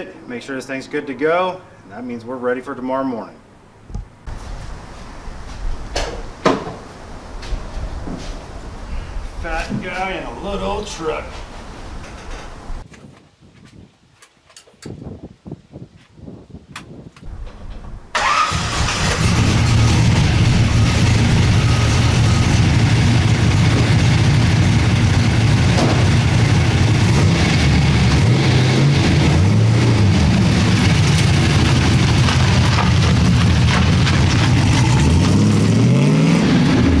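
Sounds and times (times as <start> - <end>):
pickup engine revving during burnout: 18.2 - 37.0.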